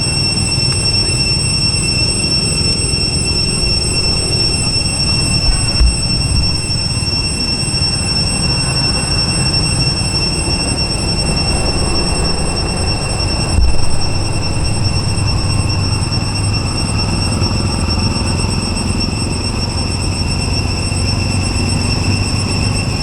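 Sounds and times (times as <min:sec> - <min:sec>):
cicadas droning: 0:00.0 - 0:23.0
low rumble: 0:02.7 - 0:18.2
brief low bumps: 0:03.1 - 0:07.6, 0:10.5 - 0:17.3.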